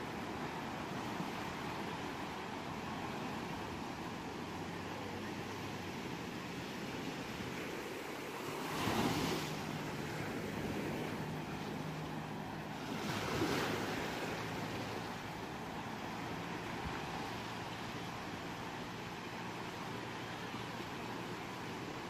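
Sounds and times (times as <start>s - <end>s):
ocean waves breaking on shore: 0.0s - 22.0s.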